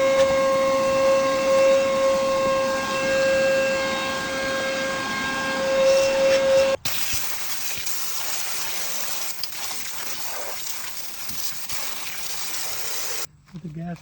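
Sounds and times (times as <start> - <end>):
high steady whine: 0.0 - 13.3
water spraying hiss: 4.1 - 13.3.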